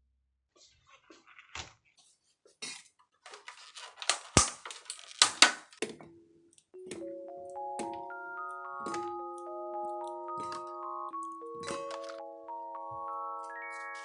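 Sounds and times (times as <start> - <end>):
light bell-like music: 6.8 - 14.0.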